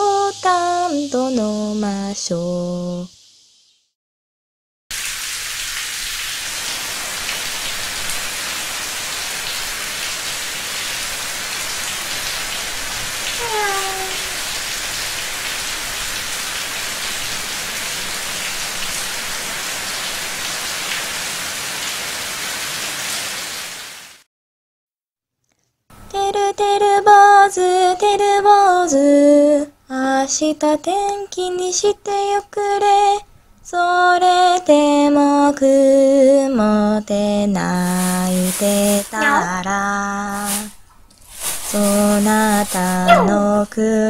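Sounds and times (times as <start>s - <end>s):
steady rain falling: 4.9s - 24.2s, 37.8s - 39.2s, 40.4s - 43.0s
brief falling cry: 13.4s - 14.4s, 43.1s - 43.4s.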